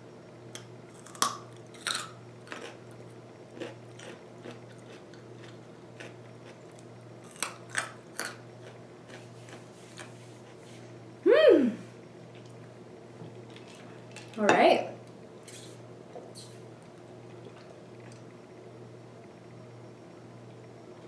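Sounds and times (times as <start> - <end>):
crunchy food crunching: 0.5 - 10.2.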